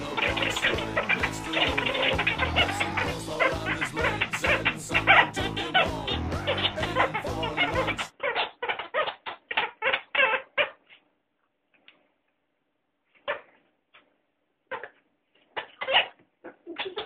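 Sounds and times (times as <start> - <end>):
rubber dog toy squeaking: 0.3 - 11.0, 14.7 - 17.0.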